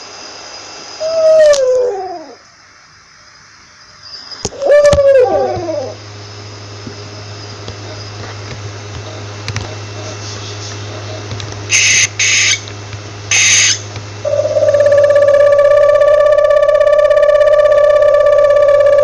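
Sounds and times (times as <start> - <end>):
low steady hum: 0.0 - 19.0
owl screeching: 1.0 - 2.4, 4.5 - 6.0, 11.7 - 12.6, 13.3 - 19.0
steady held tone: 13.3 - 19.0.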